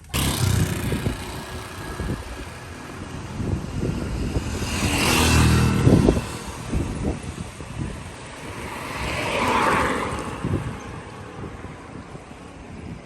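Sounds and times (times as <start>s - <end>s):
vehicle engine passing: 0.0s - 11.0s
outdoor background noise: 0.0s - 13.0s.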